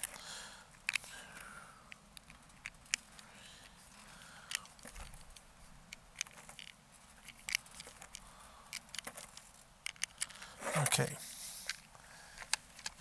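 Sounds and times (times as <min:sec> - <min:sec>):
small clicks of loading airgun: 0:00.0 - 0:03.8, 0:04.5 - 0:10.5.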